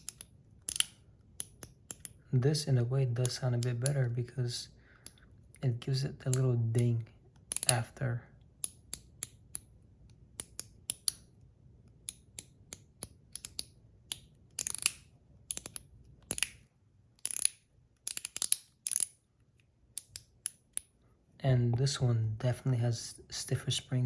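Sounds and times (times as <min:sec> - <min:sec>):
metallic fidget slider clicks: 0:00.0 - 0:02.2, 0:07.5 - 0:07.8, 0:12.1 - 0:16.6, 0:17.2 - 0:19.2.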